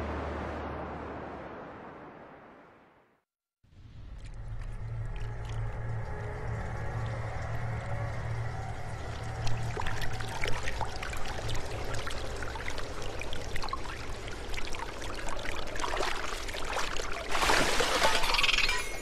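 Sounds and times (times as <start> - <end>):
water drips and clicks: 3.9 - 19.0
water running and splashing: 4.0 - 18.8.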